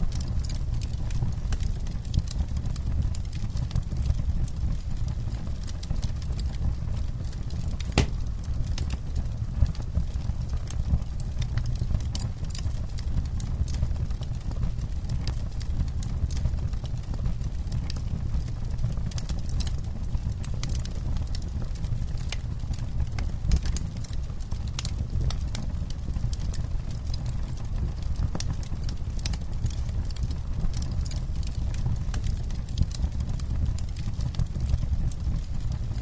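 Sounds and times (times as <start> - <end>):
campfire pops and snaps: 7.4 - 16.8, 19.1 - 36.0.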